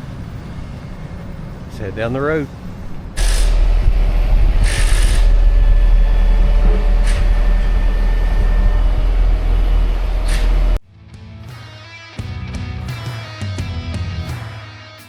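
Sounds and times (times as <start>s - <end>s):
truck engine and road rumble: 0.0s - 10.8s
short hissing rushes: 3.2s - 3.7s, 4.6s - 5.6s.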